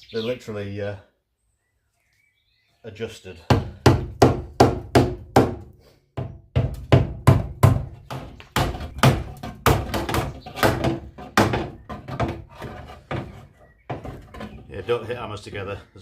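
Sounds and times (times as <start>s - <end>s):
hammer knocking on metal: 3.5s - 5.6s, 6.2s - 14.6s.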